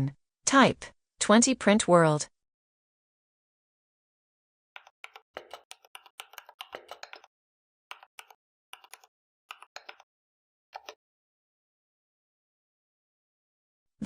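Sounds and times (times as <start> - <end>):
computer keyboard typing: 4.8 - 7.3, 7.9 - 10.1, 10.8 - 11.0.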